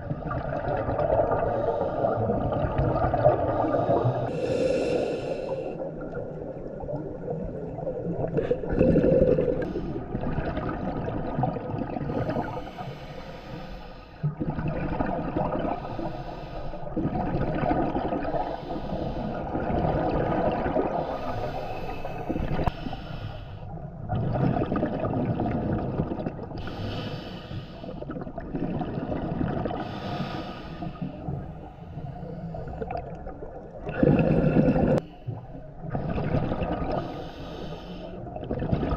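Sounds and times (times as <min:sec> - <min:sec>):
underwater regulator breathing: 0:03.5 - 0:05.9, 0:12.1 - 0:14.3, 0:15.8 - 0:17.0, 0:18.3 - 0:19.6, 0:20.9 - 0:23.8, 0:26.6 - 0:28.2, 0:29.8 - 0:33.0, 0:36.9 - 0:38.3.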